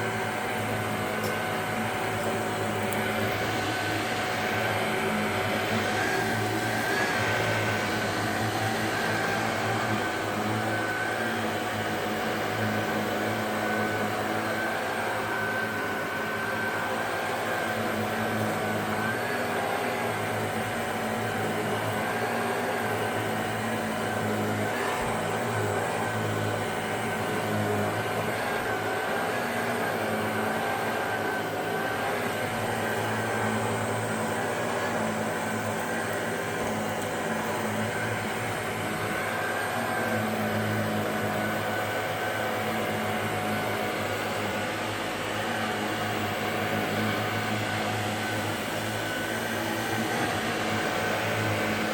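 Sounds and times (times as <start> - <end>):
vacuum cleaner running: 0.0 - 51.9.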